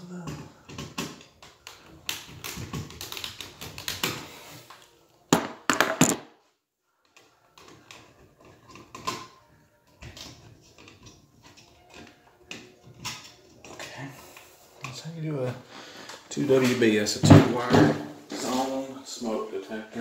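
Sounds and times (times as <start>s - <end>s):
hand tools clicking and tapping: 0.3s - 4.3s, 7.0s - 15.0s.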